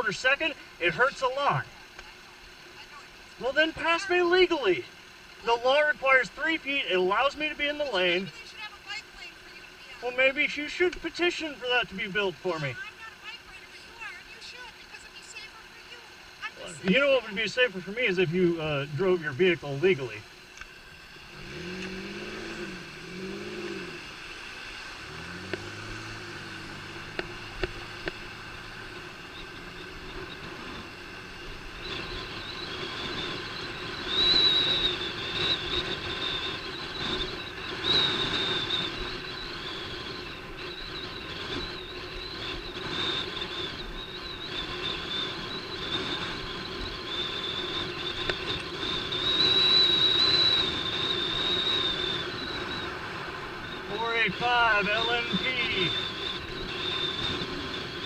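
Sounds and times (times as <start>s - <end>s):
traffic and road noise: 0.0s - 58.0s
vehicles passing: 0.0s - 58.0s
steady high whistle: 26.4s - 58.0s.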